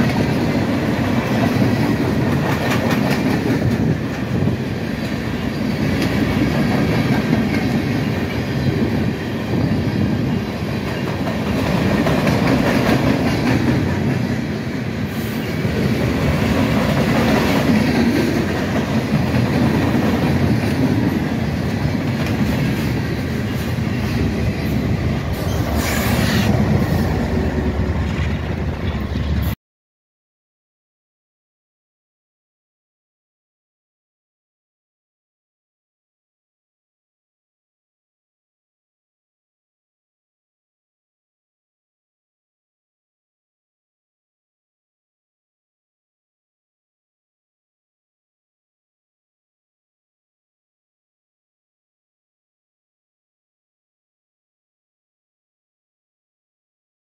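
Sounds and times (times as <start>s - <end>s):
freight train wheels clattering on rails: 0.0s - 25.8s.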